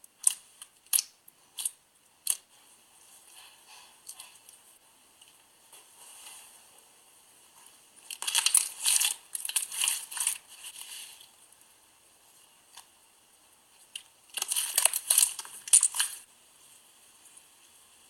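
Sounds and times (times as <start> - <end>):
slime squishing and crinkling: 7.8 - 11.4, 13.8 - 16.3.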